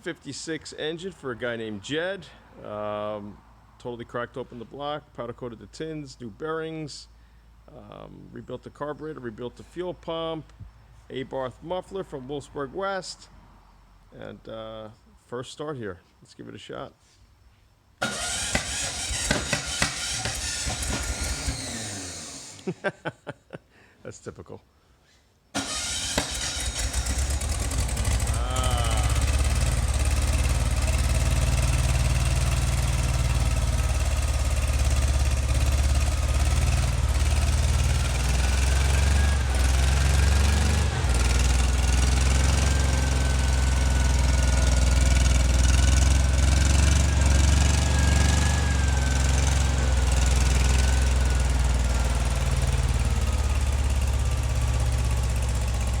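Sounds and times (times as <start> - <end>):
air-cooled engine running: 18.0 - 22.7, 25.6 - 56.0.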